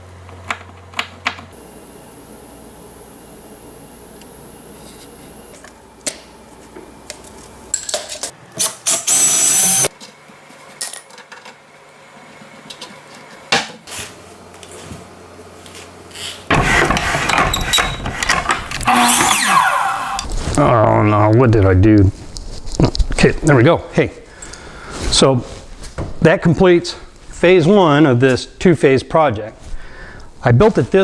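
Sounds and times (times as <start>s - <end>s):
power tool running: 8.6s - 9.9s, 16.5s - 20.3s.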